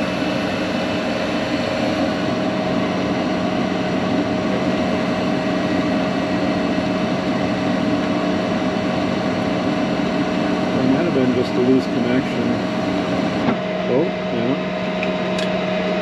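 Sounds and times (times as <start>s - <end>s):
furnace blower air rush: 0.0s - 16.0s
motor hum: 0.0s - 16.0s.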